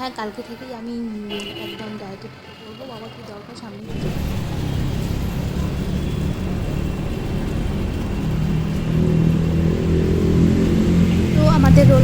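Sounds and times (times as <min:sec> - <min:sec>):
vehicle engine and road rumble: 0:00.0 - 0:12.0.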